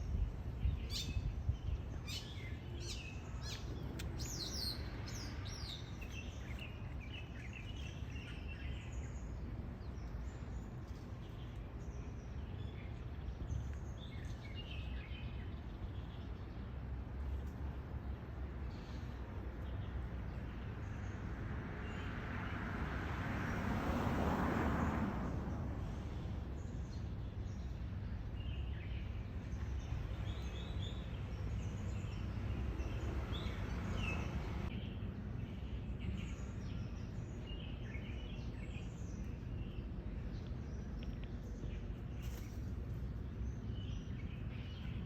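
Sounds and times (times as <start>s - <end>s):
small birds chirping: 0.0s - 21.3s, 26.5s - 45.0s
vehicle passing: 21.2s - 26.6s.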